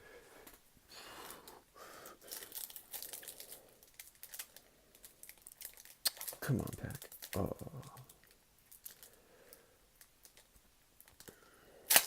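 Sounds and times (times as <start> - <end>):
wrapper tearing and crinkling: 2.3 - 9.1.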